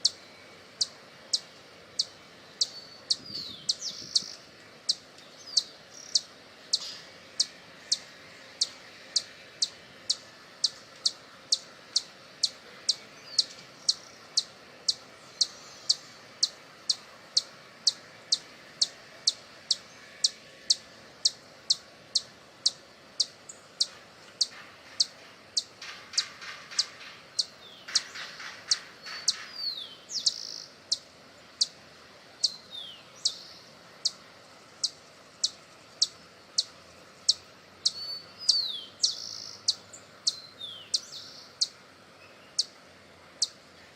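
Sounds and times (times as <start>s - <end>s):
hummingbird chip calls: 0.0s - 31.8s, 32.4s - 42.8s, 43.4s - 43.7s
buzzy rattling bird call: 13.4s - 30.7s.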